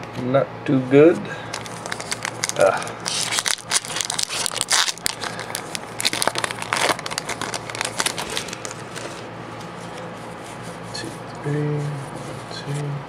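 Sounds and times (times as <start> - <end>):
foil wrapper crinkling: 1.5 - 10.0.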